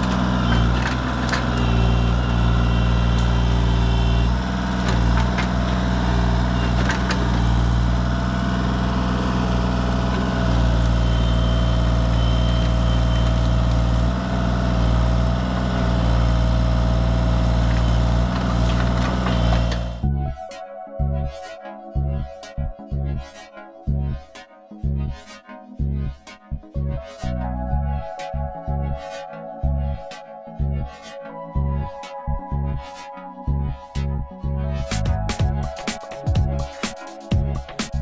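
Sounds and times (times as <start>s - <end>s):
excavator engine running: 0.0s - 20.1s, 34.8s - 38.0s
high whine: 0.0s - 20.4s, 34.8s - 38.0s.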